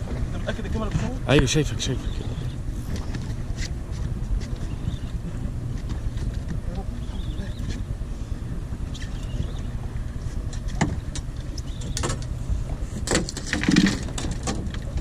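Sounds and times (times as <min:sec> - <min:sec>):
boat low rumble: 0:00.0 - 0:15.0
clatter of bumps: 0:13.0 - 0:15.0.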